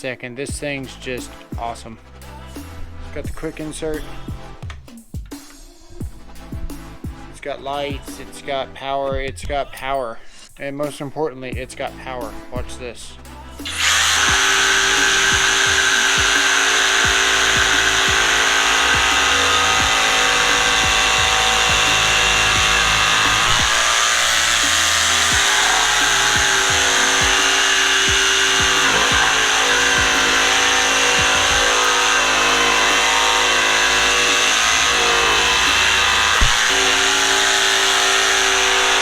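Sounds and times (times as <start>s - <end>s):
background music: 0.0s - 39.0s
jigsaw cutting wood: 13.6s - 39.0s.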